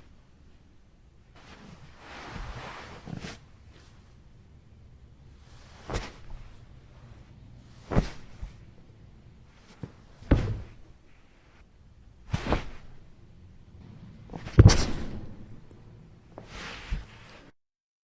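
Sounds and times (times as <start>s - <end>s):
body falling with heavy thud: 5.6s - 8.7s, 9.5s - 11.0s, 12.3s - 13.1s, 14.3s - 15.4s.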